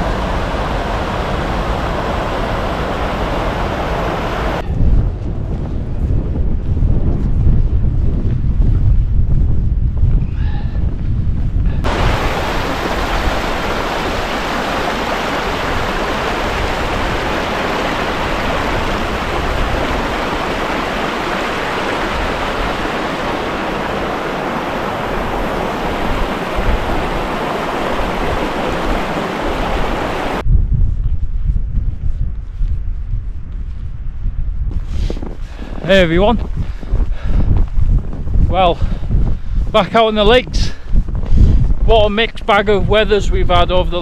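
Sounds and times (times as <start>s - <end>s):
stream water rushing: 0.0s - 4.6s, 11.8s - 30.4s
wind buffeting microphone: 0.0s - 44.0s.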